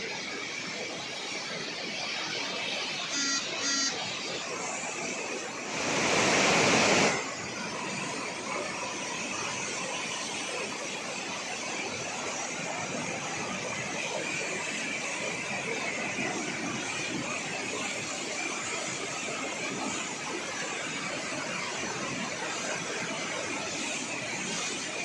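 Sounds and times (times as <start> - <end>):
heavy water rushing: 0.6 - 25.0.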